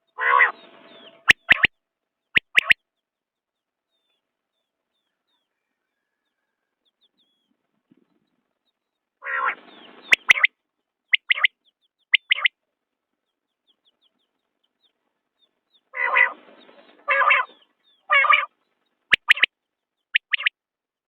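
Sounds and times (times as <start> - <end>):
quail calling: 0.2 - 1.7, 2.4 - 2.8, 9.2 - 10.5, 11.1 - 11.5, 12.1 - 12.5, 15.9 - 18.5, 19.1 - 19.5, 20.2 - 20.5
sharp clicks: 10.1 - 10.5, 19.1 - 19.5.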